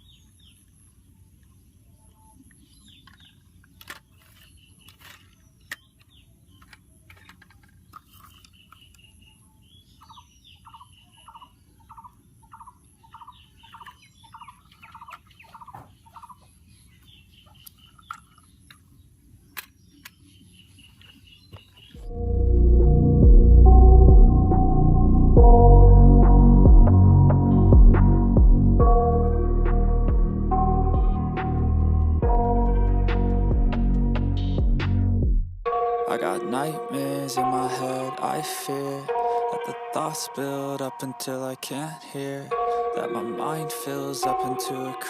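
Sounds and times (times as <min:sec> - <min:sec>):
birds chirping and calling: 0:00.0 - 0:22.1, 0:35.8 - 0:45.0
music: 0:22.1 - 0:41.4, 0:42.2 - 0:45.0.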